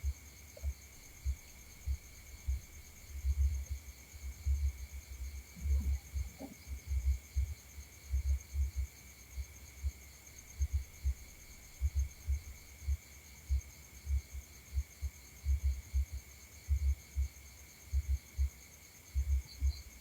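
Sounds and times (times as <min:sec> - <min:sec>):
insects chirring: 0:00.0 - 0:20.0.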